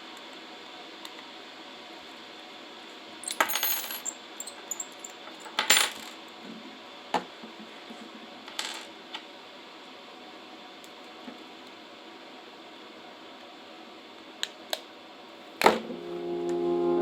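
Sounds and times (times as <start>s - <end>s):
small metal parts clinking: 3.2s - 6.0s.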